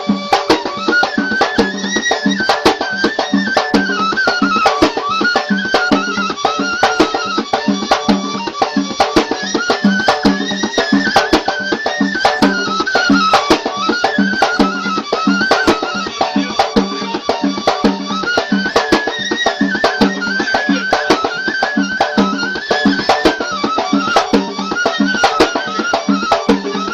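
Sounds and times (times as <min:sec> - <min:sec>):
quick drum beat: 0:00.0 - 0:26.9
reed pipe melody: 0:00.0 - 0:26.9.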